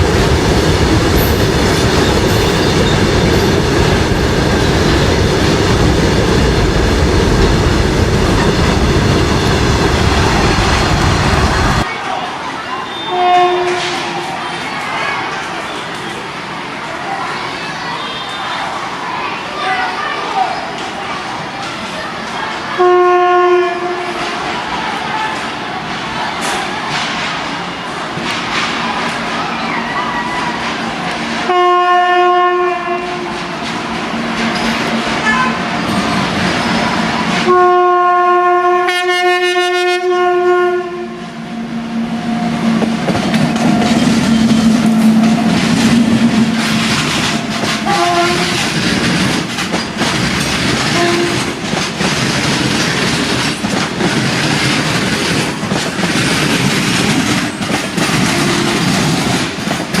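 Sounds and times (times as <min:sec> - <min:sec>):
locomotive horn blasts: 0:12.9 - 0:14.1, 0:22.8 - 0:24.4, 0:31.4 - 0:33.3, 0:37.5 - 0:42.4, 0:47.8 - 0:48.7, 0:50.9 - 0:51.5
train wheels clicking over rail joints: 0:42.6 - 1:00.0.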